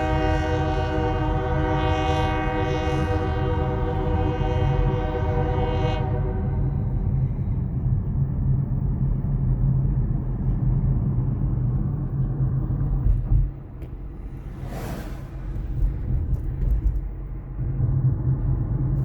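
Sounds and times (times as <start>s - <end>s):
vehicle engine rumble: 0.0s - 19.0s
brief rush of noise: 14.3s - 15.9s.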